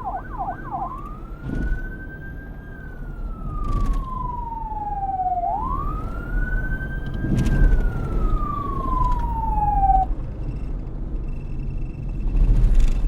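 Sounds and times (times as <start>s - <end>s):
emergency vehicle siren: 0.0s - 10.4s
low rumble of traffic: 0.0s - 13.0s.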